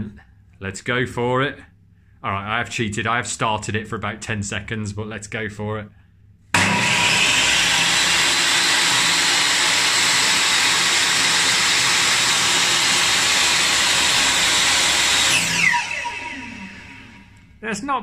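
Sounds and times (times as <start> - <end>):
saw blade spinning down: 6.6 - 17.5
table saw whining: 6.6 - 17.6.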